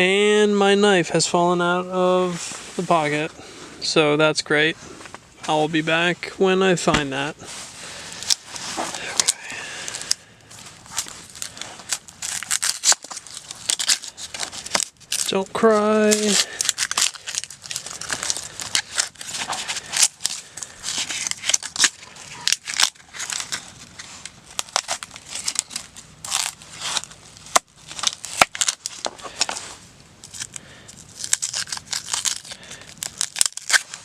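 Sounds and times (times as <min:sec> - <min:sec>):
onion skin crackling and tearing: 0:08.1 - 0:34.0.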